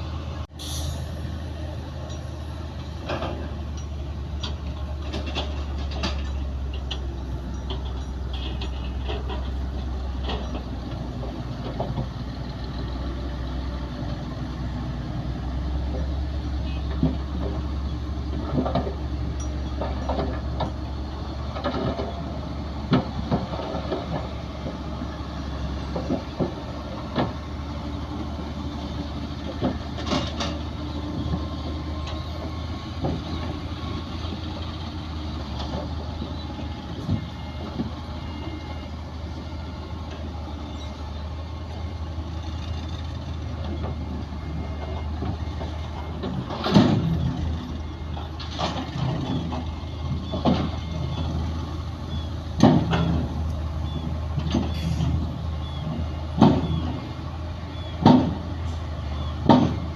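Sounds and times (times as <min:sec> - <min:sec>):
heavy diesel machinery droning: 0:00.0 - 0:59.9
metal clanks and bangs: 0:03.0 - 0:12.1, 0:44.8 - 0:51.3.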